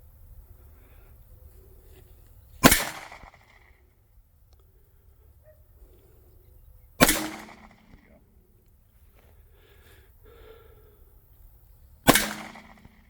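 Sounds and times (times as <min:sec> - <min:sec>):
pistol shots: 0:02.6 - 0:03.7, 0:07.0 - 0:08.2, 0:12.0 - 0:13.0.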